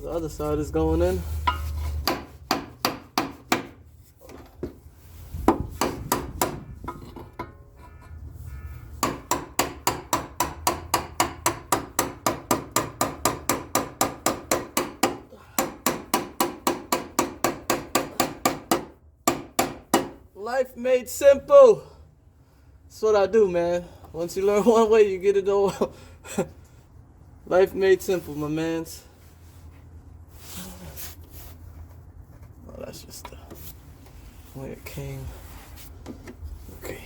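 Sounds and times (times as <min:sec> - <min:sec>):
hammer tapping metal: 0:09.0 - 0:20.2.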